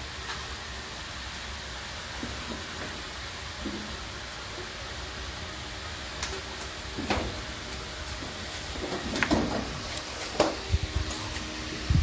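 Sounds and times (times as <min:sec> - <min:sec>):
steady background hum: 0:00.0 - 0:12.0
tools and metal parts clinking: 0:11.1 - 0:11.4.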